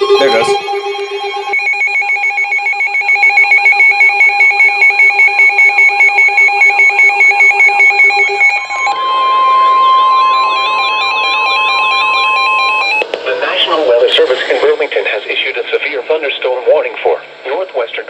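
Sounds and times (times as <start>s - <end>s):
steady single-pitch attention tone: 0.0s - 13.1s
electronic warning beeps: 0.0s - 13.6s
warbling siren-like tone: 0.0s - 13.6s.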